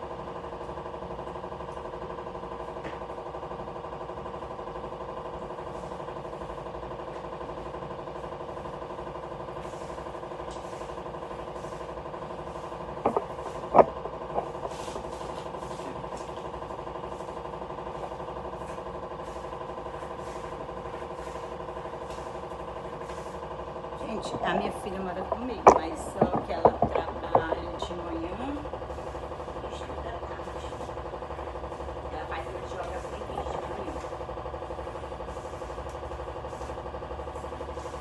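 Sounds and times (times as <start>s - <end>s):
mechanical motor hum: 0.0s - 38.0s
sharp knocks and clatters: 13.0s - 14.6s, 24.5s - 27.9s.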